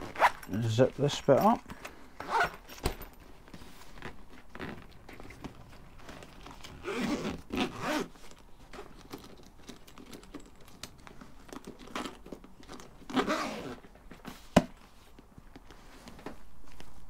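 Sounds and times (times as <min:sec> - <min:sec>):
zipper being pulled closed: 0:00.0 - 0:00.5, 0:02.2 - 0:02.9, 0:06.6 - 0:08.2, 0:13.0 - 0:13.8
fabric rustling: 0:11.0 - 0:17.0.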